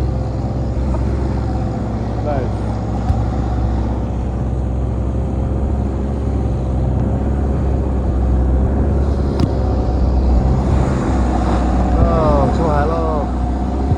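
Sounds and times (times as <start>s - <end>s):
boat engine droning: 0.0s - 13.9s
wind and water hiss: 7.8s - 13.9s.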